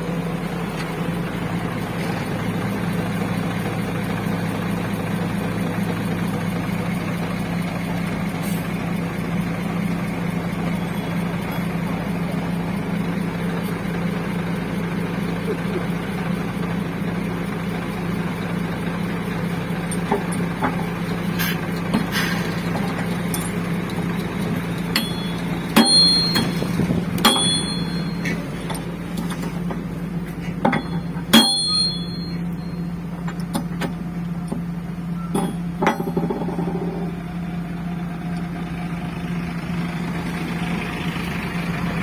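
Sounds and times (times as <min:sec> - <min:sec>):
excavator engine idling: 0:00.0 - 0:42.0
metal hammer strikes: 0:24.3 - 0:29.8, 0:30.6 - 0:32.7, 0:35.3 - 0:37.0.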